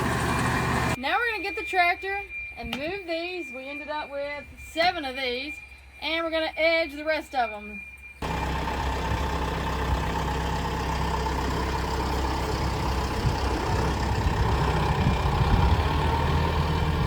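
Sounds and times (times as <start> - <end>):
engine running steadily: 0.0 - 1.0, 8.2 - 17.0.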